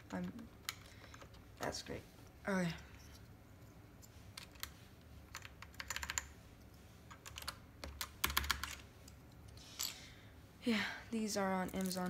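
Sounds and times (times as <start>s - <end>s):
mechanical keyboard clicking: 5.4s - 6.3s, 7.2s - 8.8s.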